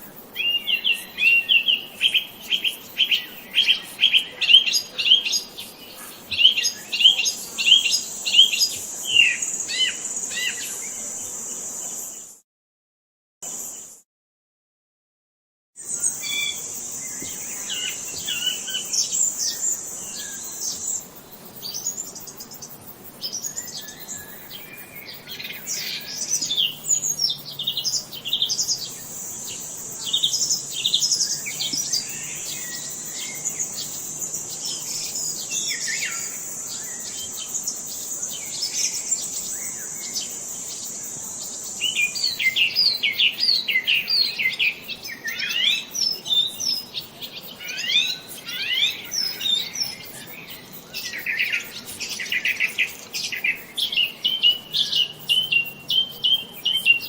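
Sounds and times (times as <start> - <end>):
songbirds chirping and singing: 0.2 - 11.3, 15.8 - 57.0
high-pitched insect drone: 15.8 - 57.0.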